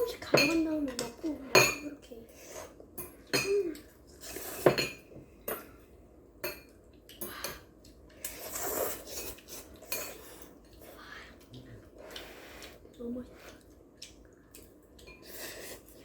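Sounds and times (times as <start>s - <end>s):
utensils clinking against bowls: 0.0s - 2.1s, 3.0s - 5.7s, 8.3s - 10.6s.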